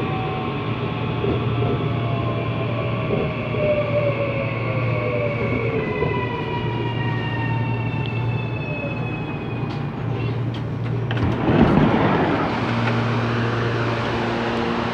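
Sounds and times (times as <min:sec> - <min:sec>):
electric train motors whining: 0:02.2 - 0:14.9
heavy drone: 0:11.1 - 0:14.9.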